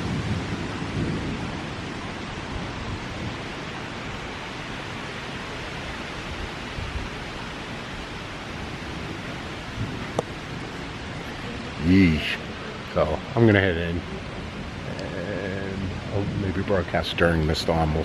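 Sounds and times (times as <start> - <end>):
wind rushing: 8.1 - 17.4.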